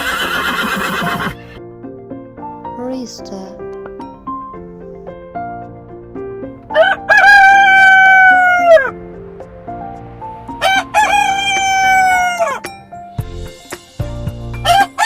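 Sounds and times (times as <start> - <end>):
soft background music: 0.0 - 15.0
rooster crowing: 6.7 - 9.0, 10.6 - 12.8, 14.6 - 15.0.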